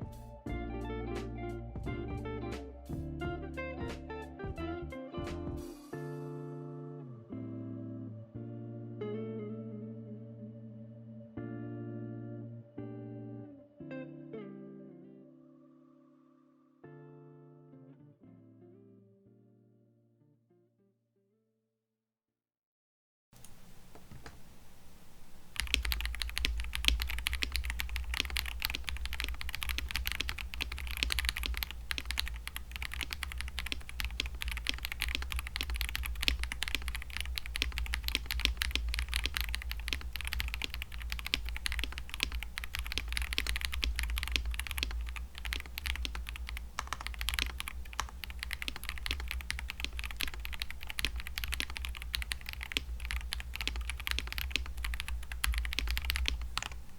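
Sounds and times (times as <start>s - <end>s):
fast mechanical keyboard typing: 25.5s - 56.9s.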